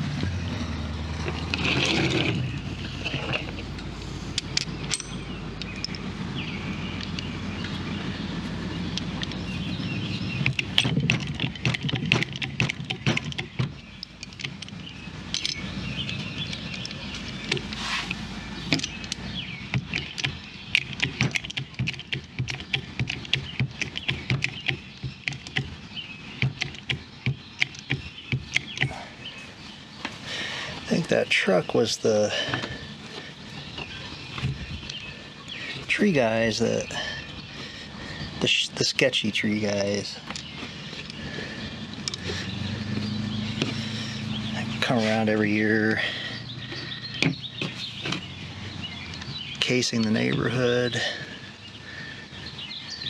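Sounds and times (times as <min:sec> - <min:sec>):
truck engine droning: 0:00.0 - 0:53.0
small metal parts clicking: 0:04.3 - 0:06.0, 0:10.4 - 0:25.8, 0:26.4 - 0:29.0, 0:41.9 - 0:42.4.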